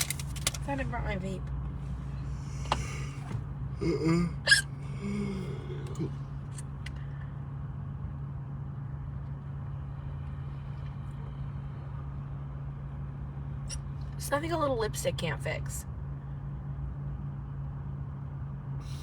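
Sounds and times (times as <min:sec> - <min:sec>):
car cabin hum: 0:00.0 - 0:15.8
person hiccuping: 0:03.8 - 0:06.2.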